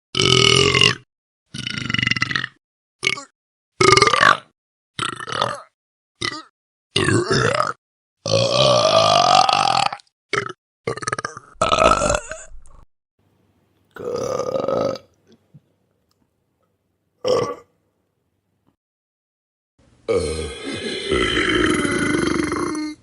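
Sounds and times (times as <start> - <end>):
person burping: 0.2 - 12.8, 14.0 - 15.2, 17.2 - 17.7, 20.1 - 23.0.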